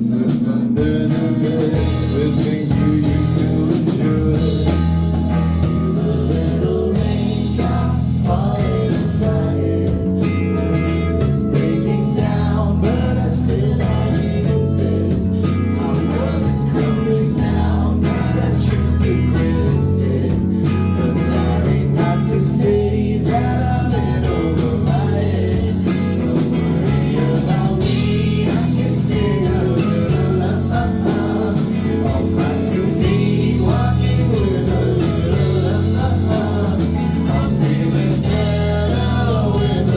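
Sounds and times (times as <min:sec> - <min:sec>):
bass guitar: 0:00.0 - 0:39.9
drums: 0:00.0 - 0:39.9
electric guitar: 0:00.0 - 0:39.9
person singing: 0:00.0 - 0:39.9.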